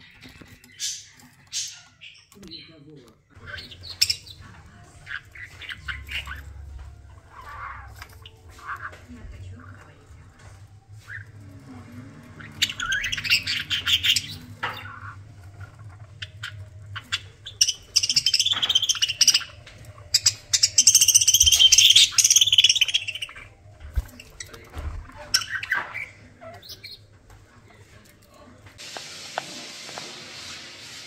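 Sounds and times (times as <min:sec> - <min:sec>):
bird chirps and ticks: 0:00.0 - 0:11.4, 0:12.4 - 0:24.6
budgerigars chattering and warbling: 0:00.0 - 0:27.9.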